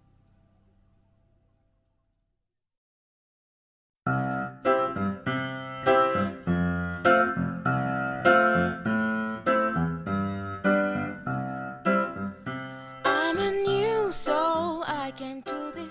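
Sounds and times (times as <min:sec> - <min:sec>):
piano playing chords: 0:04.1 - 0:15.9
person singing: 0:13.0 - 0:15.9.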